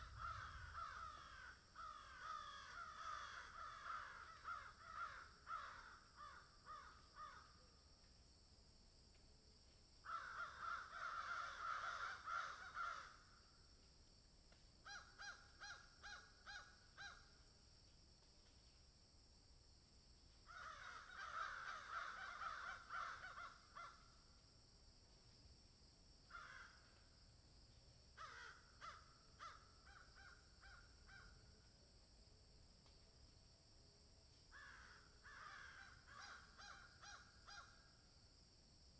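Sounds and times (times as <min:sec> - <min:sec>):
magpies and crows chattering: 0:00.0 - 0:07.4, 0:10.1 - 0:13.1, 0:20.5 - 0:23.9.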